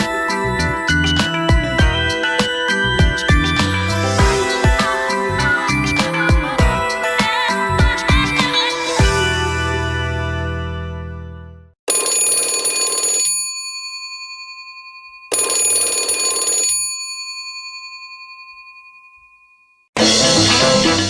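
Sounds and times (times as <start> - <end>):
latin percussive tune: 0.0 - 9.9, 20.0 - 21.0
bell-like chime ringtone: 0.0 - 10.6, 12.0 - 19.9.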